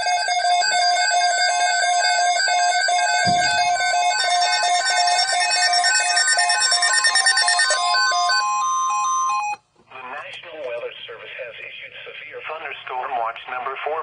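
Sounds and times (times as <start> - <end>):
electronic alert beeping: 3.2 - 9.6.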